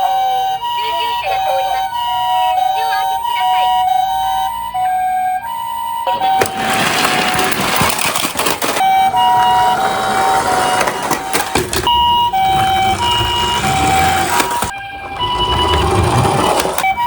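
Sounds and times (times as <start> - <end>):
two-tone ambulance siren: 0.0 - 17.0
clattering rattle of small objects: 6.4 - 9.1.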